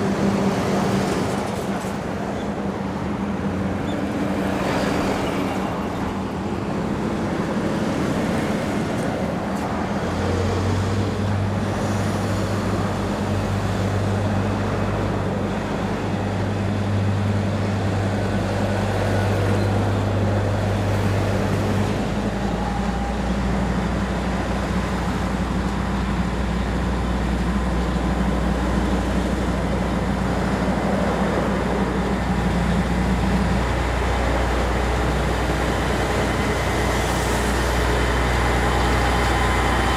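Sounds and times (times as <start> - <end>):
diesel locomotive engines running: 0.0 - 39.9.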